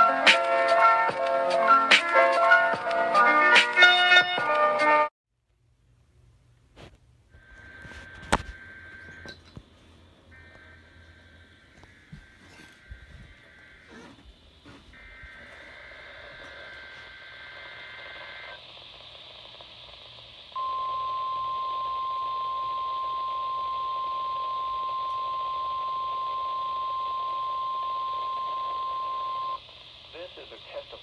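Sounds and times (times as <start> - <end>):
faint radio hiss: 5.6 - 31.0
steady warning alarm tone: 10.3 - 18.6, 20.6 - 29.6.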